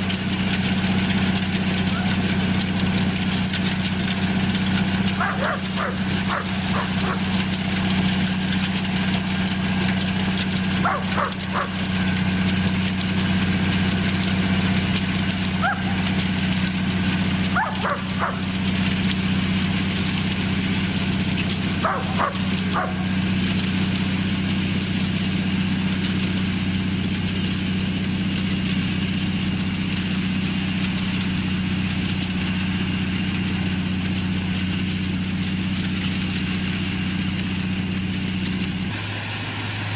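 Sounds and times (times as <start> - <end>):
tractor engine running: 0.0 - 39.9
dog barking: 5.2 - 7.2, 10.8 - 11.8, 15.6 - 16.0, 17.6 - 18.4, 21.8 - 23.0.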